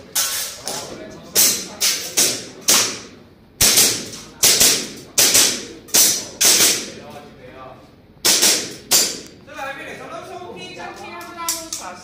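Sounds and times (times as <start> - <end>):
airsoft pistol shots: 1.4 - 6.9, 8.2 - 9.2.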